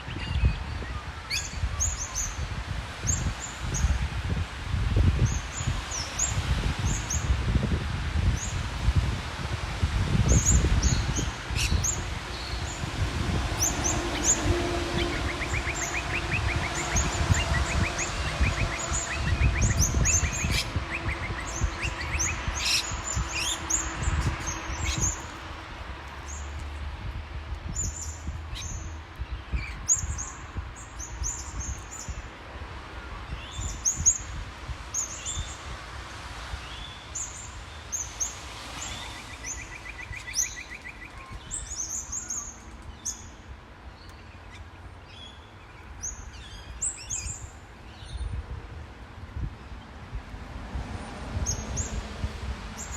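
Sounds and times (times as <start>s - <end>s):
road traffic rumble: 0.0s - 52.9s
birds chirping: 10.2s - 26.8s, 36.6s - 48.4s.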